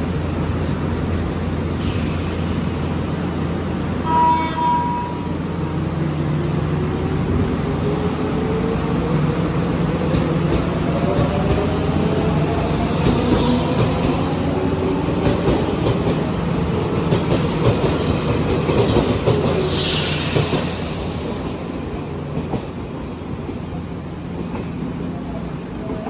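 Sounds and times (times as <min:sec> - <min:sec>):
air hiss: 0:01.8 - 0:03.4, 0:16.8 - 0:21.9
train wheels clattering on rails: 0:09.9 - 0:24.8.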